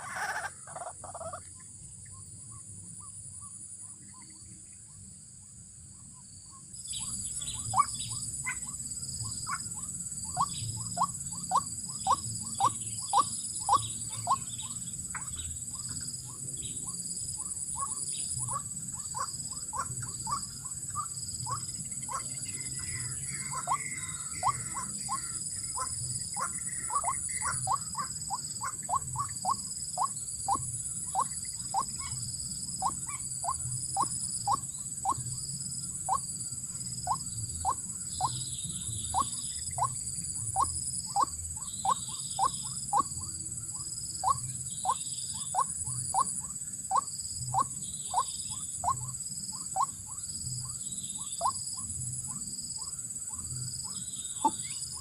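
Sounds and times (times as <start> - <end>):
higher bird call: 0.0 - 1.4
waterhen calling: 0.0 - 1.4
steady high-pitched hum: 0.0 - 55.0.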